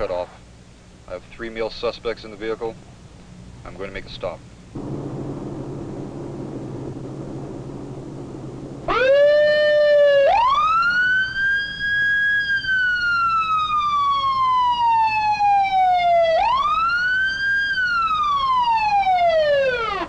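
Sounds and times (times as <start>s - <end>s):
police siren wailing: 8.8s - 20.0s.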